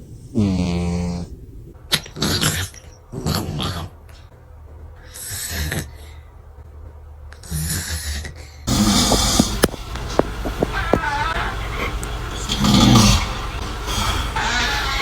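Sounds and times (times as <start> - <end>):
cat snoring: 0.1 - 4.0, 7.4 - 15.0.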